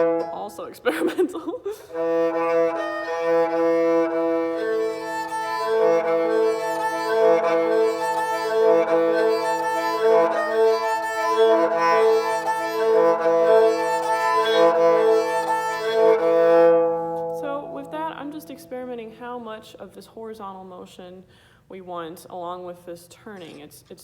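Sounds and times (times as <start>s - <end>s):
bowed string instrument notes: 0.0s - 0.9s, 1.9s - 19.1s.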